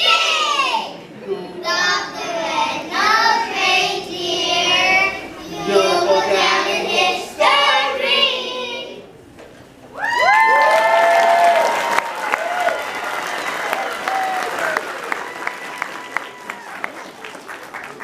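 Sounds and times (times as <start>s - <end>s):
children singing: 0.0s - 9.1s.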